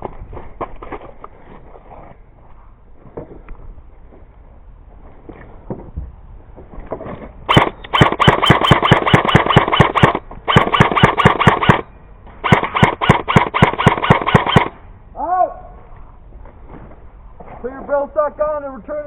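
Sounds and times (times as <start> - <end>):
airsoft gun firing bursts: 7.5 - 14.8.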